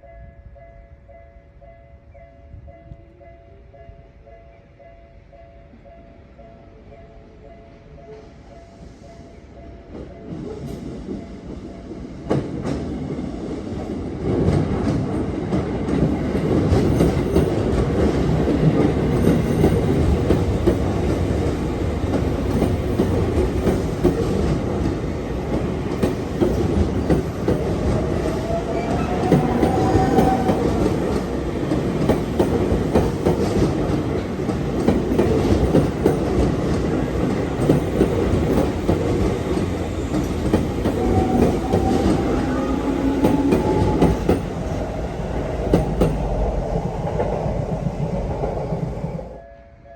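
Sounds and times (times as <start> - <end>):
train wheels clattering: 9.8 - 49.2.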